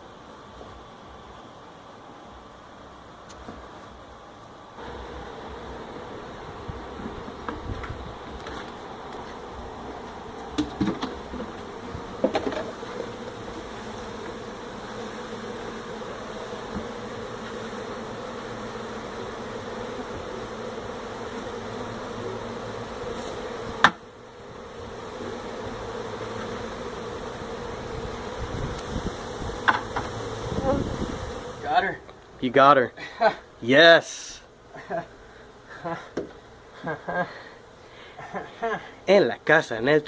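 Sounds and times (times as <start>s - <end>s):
bees buzzing: 0.0s - 40.0s
knocks: 10.5s - 11.6s.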